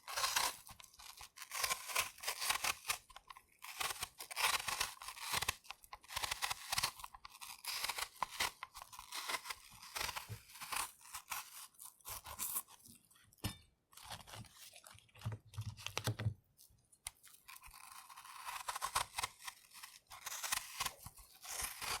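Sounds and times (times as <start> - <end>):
knife peeling apple skin: 0.0 - 16.2, 17.0 - 22.0.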